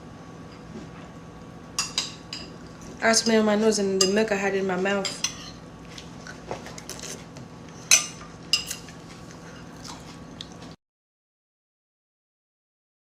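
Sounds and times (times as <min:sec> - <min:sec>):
faint steady hum: 0:00.0 - 0:10.8.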